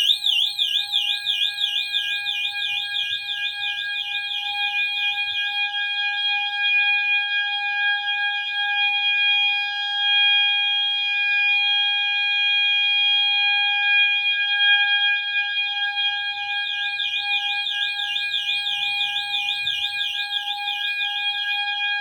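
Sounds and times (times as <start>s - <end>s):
fire alarm warble tone: 0.0s - 9.3s, 14.0s - 22.0s
fire alarm steady tone: 0.0s - 22.0s.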